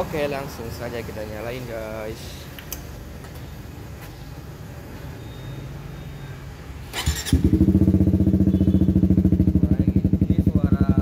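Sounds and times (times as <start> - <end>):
motorcycle engine starting and idling: 6.8 - 11.0.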